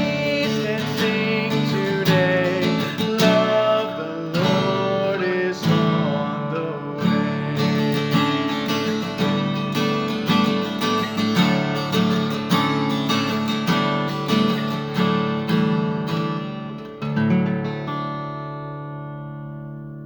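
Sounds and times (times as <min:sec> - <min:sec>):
guitar strumming chords: 0:00.0 - 0:20.0.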